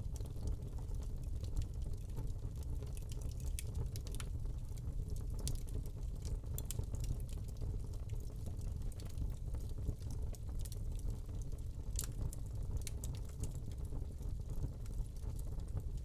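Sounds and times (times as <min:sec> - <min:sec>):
fire crackling and popping: 0:00.0 - 0:16.0.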